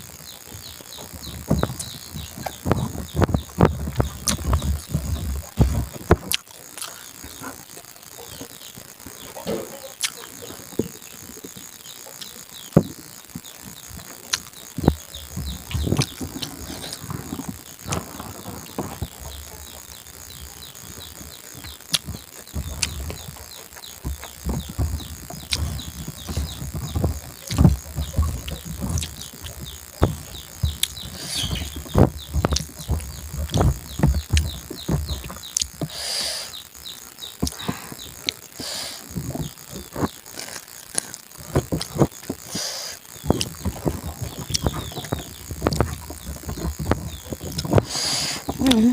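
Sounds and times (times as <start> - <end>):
insects chirping: 0.0 - 48.9
sharp clicks: 1.1 - 7.9, 20.0 - 48.9
chewing and mouth noises: 1.1 - 8.5, 9.4 - 12.7, 13.4 - 36.0, 37.4 - 48.9.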